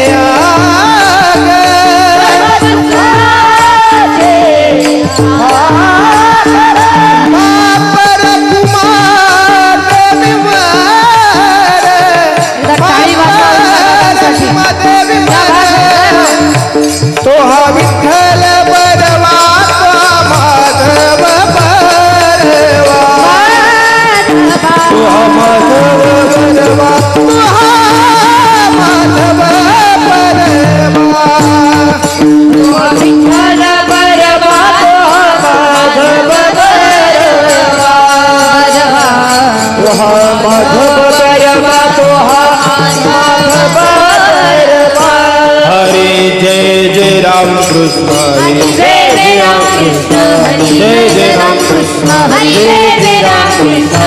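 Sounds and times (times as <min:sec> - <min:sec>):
woman singing: 0:00.0 - 0:32.0, 0:48.2 - 0:54.0
drum accompaniment: 0:00.0 - 0:54.0.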